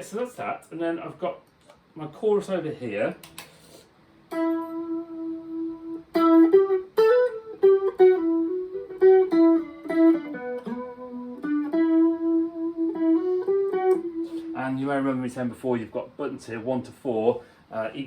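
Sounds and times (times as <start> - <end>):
electric guitar melody with chorus: 4.3 - 14.8.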